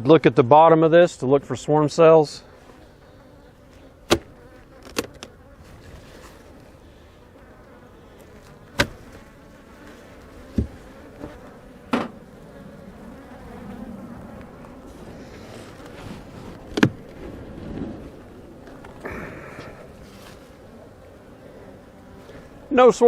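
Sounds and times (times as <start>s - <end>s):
bees buzzing: 1.3s - 23.0s
sharp knocks: 11.9s - 12.2s.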